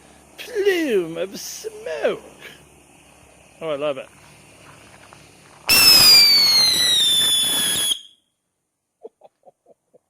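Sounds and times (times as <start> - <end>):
firework whistle over rushing hiss: 5.7 - 8.2.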